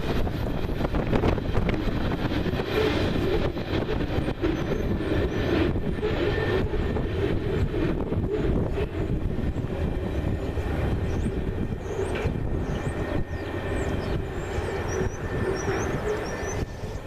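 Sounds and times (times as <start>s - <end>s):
train wheels on rails: 0.0s - 17.0s.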